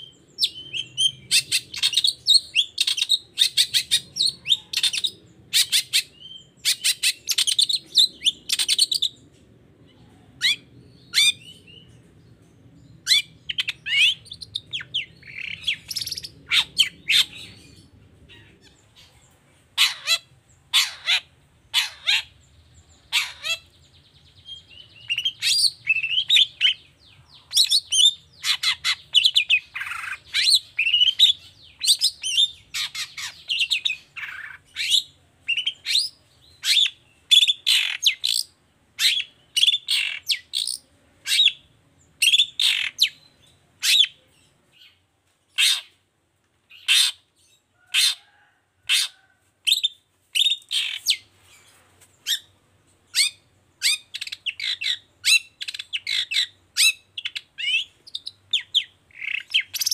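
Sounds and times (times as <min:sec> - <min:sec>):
bird chattering calls: 0:19.8 - 0:23.7.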